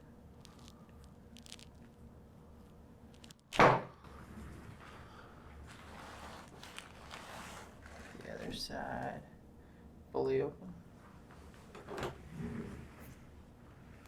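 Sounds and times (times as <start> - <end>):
loud thump: 3.6 - 3.9.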